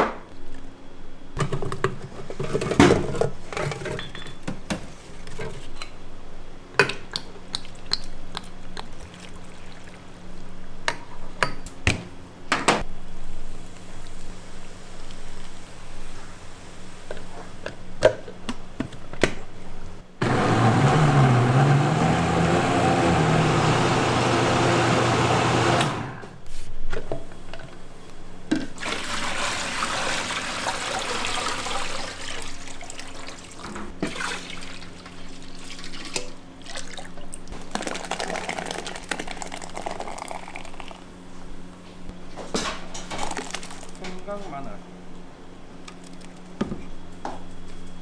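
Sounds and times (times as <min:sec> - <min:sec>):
kitchen clatter: 0:01.4 - 0:05.9
machine motor running: 0:20.2 - 0:26.4
liquid splashing and pouring: 0:28.8 - 0:41.0.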